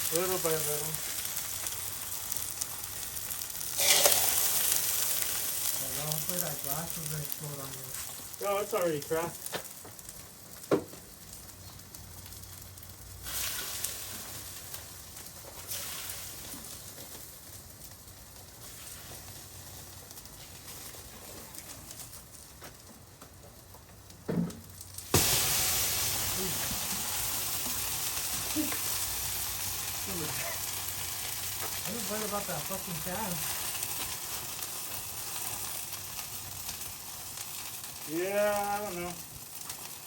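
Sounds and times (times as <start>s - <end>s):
loud steady hiss: 0.0s - 2.2s, 3.8s - 9.4s, 25.0s - 33.4s
fire sizzling and crackling: 0.0s - 40.0s.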